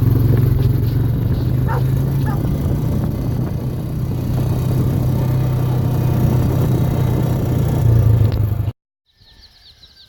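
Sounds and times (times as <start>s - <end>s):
vehicle engine rumbling: 0.0s - 8.8s
faint birds chirping: 9.1s - 10.0s.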